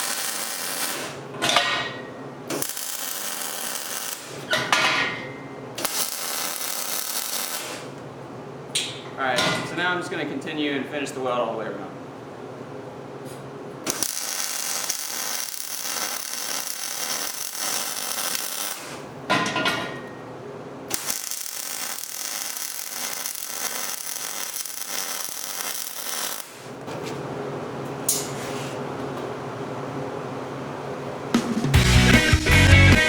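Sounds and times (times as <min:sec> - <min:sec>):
welding arc crackling: 0:00.0 - 0:01.3, 0:02.5 - 0:04.5, 0:05.8 - 0:08.0, 0:13.8 - 0:19.2, 0:20.9 - 0:26.8.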